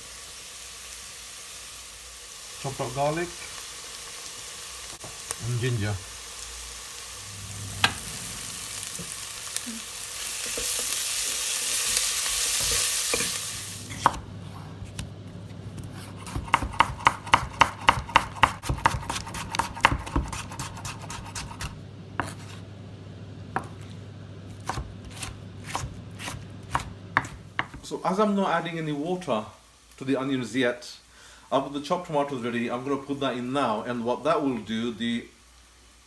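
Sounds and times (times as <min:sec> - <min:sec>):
food sizzling in hot oil: 0:00.0 - 0:14.3
steady low hum: 0:07.1 - 0:09.8, 0:20.5 - 0:27.8.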